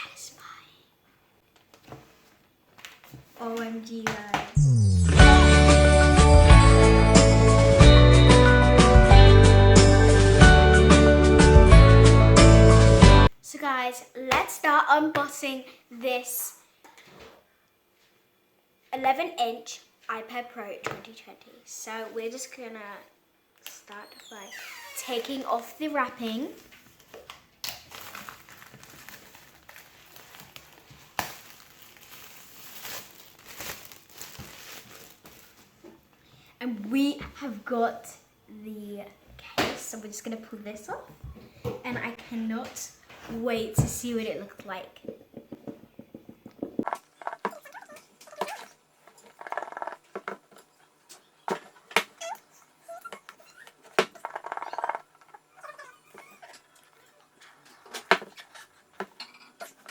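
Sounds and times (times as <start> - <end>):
short high squeaks: 24.0 - 25.2
plastic wrapping crinkling: 26.6 - 36.0.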